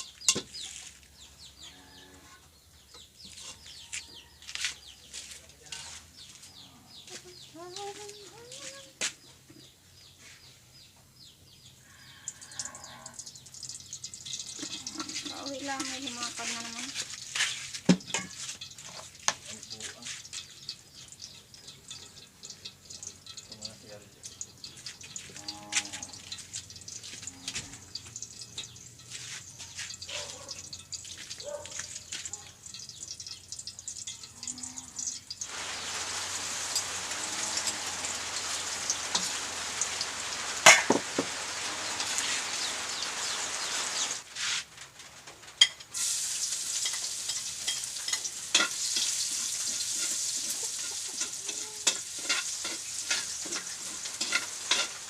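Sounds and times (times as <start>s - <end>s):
food sizzling in a hot pan: 12.3s - 55.0s.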